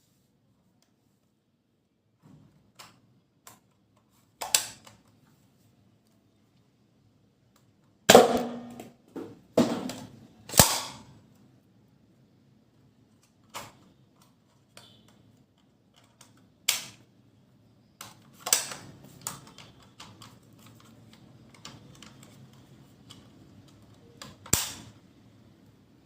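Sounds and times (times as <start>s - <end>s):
toy blaster clicks and snaps: 10.5s - 11.1s, 16.2s - 17.0s, 18.0s - 20.2s, 24.2s - 25.0s.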